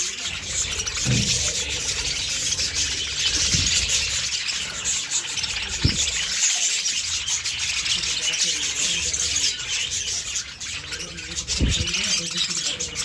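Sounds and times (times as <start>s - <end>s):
budgerigars chattering and squawking: 0.0s - 13.0s
low thump: 5.8s - 6.1s.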